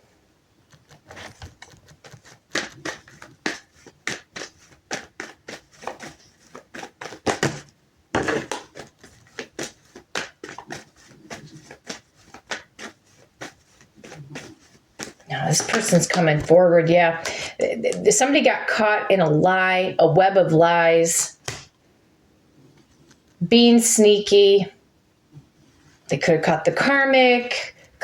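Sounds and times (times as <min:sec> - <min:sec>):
cards being shuffled: 0:00.6 - 0:16.6, 0:17.2 - 0:18.1.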